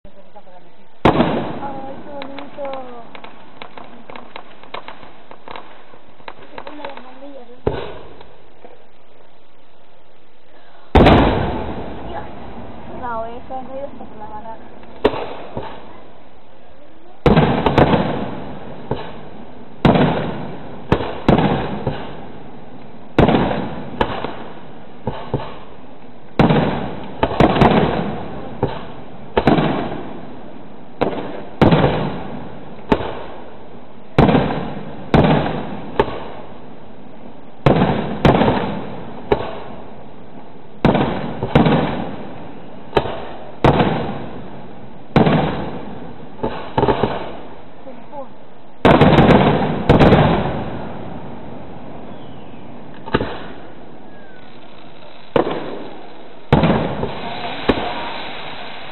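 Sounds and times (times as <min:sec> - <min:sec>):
firework shell bursts: 0:52.9 - 0:58.9.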